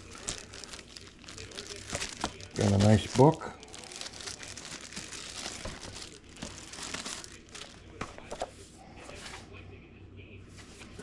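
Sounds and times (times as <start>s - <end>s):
packaging crinkling and rustling: 0.0s - 8.5s.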